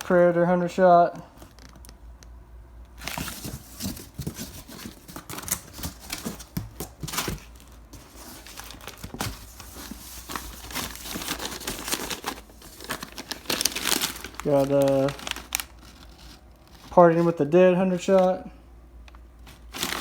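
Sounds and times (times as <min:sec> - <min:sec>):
wrapping crinkling: 0:03.0 - 0:17.4, 0:19.4 - 0:20.0.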